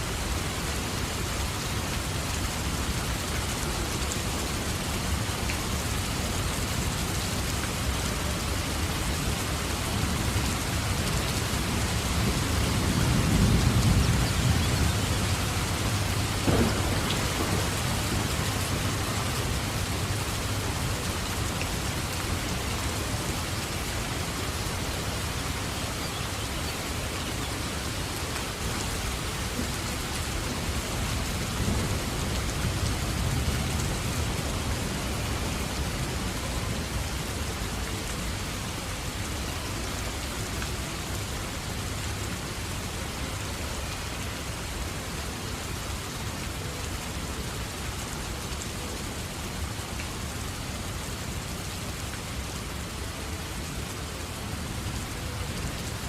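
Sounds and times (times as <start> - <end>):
heavy rain pattering: 0.0 - 56.0
low thunder rumble: 12.3 - 20.6.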